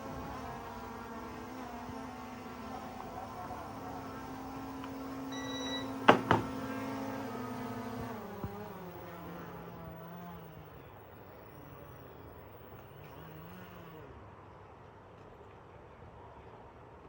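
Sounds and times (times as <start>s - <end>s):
drone propellers humming: 0.0s - 14.0s
short high beep: 5.3s - 6.0s.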